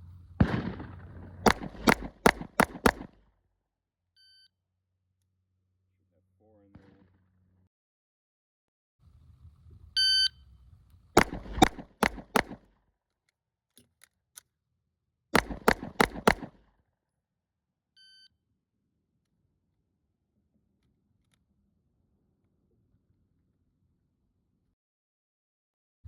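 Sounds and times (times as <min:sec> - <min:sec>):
pistol shots: 0:00.4 - 0:03.2, 0:11.2 - 0:12.7, 0:15.4 - 0:16.6
shot timer beep: 0:10.0 - 0:10.3.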